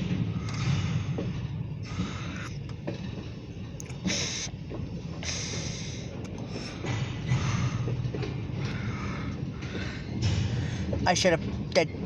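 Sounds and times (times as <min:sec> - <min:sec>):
freight train rumbling past: 0:00.0 - 0:12.0
short hissing noises: 0:04.0 - 0:04.5.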